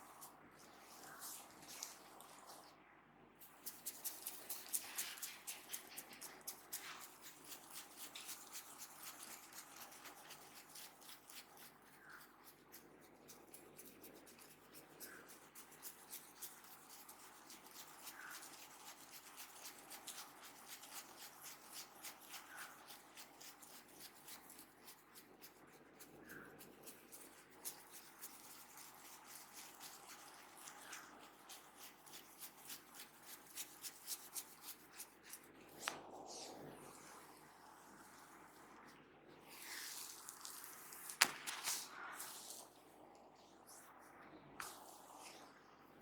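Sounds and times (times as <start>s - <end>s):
fingers rubbing oiled hair: 3.4s - 37.1s, 39.6s - 42.7s.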